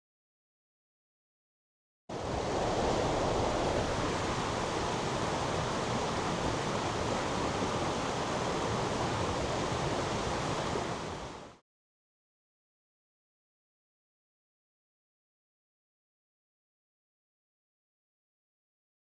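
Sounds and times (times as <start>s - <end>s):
rushing stream water: 2.1s - 11.6s.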